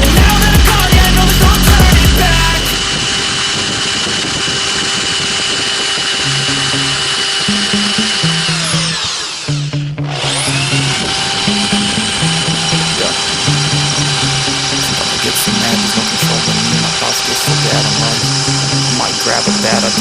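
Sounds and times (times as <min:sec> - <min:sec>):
rap-rock beat: 0:00.0 - 0:03.2, 0:11.7 - 0:20.0
rhythmic bassline: 0:00.0 - 0:03.3, 0:05.9 - 0:20.0
distorted buzzing lead: 0:00.0 - 0:20.0.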